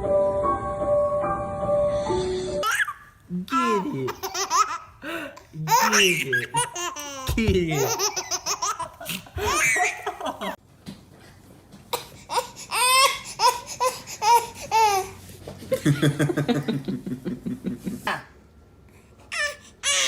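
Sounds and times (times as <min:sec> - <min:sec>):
baby laughing: 0:02.6 - 0:05.0, 0:05.6 - 0:10.6, 0:12.0 - 0:15.2.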